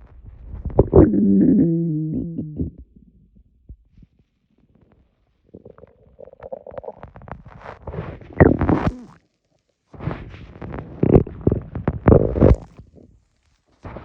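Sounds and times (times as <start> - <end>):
stomach gurgling: 0.1 - 4.0, 4.9 - 9.2, 10.0 - 13.2.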